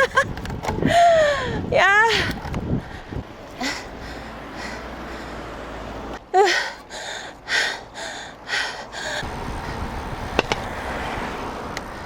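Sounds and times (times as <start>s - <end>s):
wind and road noise: 0.0s - 12.0s
person breathing hard: 0.8s - 5.6s, 6.4s - 9.9s.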